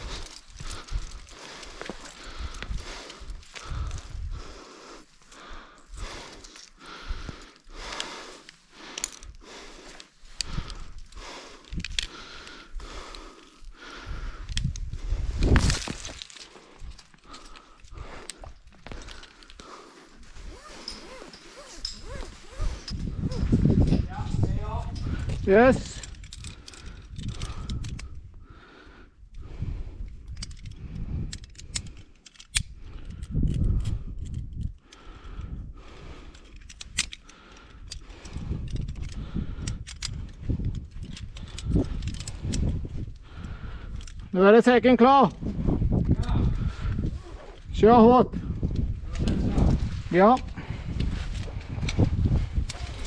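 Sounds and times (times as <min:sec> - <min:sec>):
heavy fast breathing: 0:00.0 - 0:44.7, 0:45.3 - 0:47.7, 0:48.3 - 0:53.0
climbing hardware clinking: 0:15.4 - 0:28.1.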